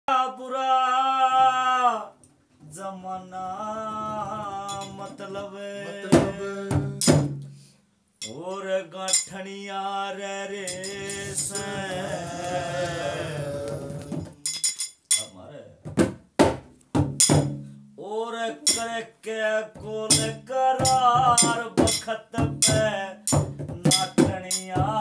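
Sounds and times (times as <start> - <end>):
sharp drum strikes: 6.2 - 7.5, 16.4 - 17.7, 18.7 - 18.9, 20.1 - 25.0.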